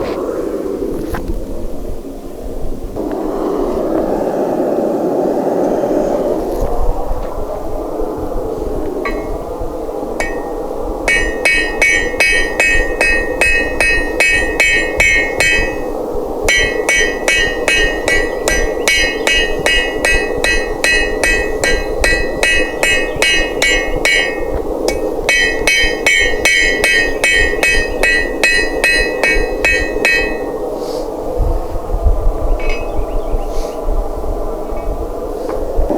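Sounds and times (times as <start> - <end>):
hammer striking steel on anvil: 10.2 - 30.7.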